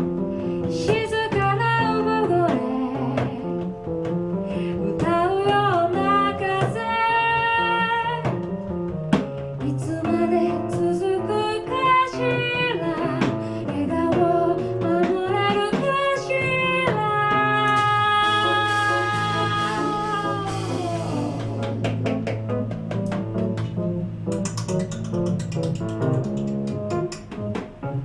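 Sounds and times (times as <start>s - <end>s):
drum kit: 0.0s - 28.0s
piano: 0.0s - 28.0s
woman singing: 0.6s - 3.7s, 4.8s - 8.4s, 9.6s - 21.9s
sharp drum hits: 17.7s - 27.8s.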